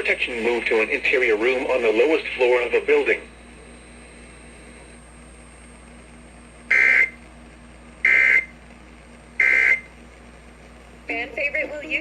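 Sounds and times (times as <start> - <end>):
faint radio hiss: 0.0 - 12.0
buzzing digital data bursts: 6.7 - 7.2, 8.0 - 8.5, 9.4 - 9.9.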